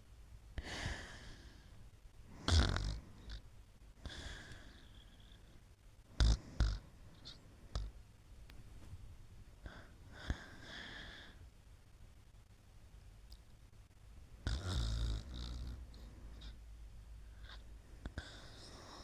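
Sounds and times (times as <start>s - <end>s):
sleep breathing and snoring: 0.6s - 3.4s, 4.0s - 7.9s, 14.4s - 16.6s, 17.4s - 19.0s
sharp snorts: 2.4s - 3.4s, 6.2s - 7.9s.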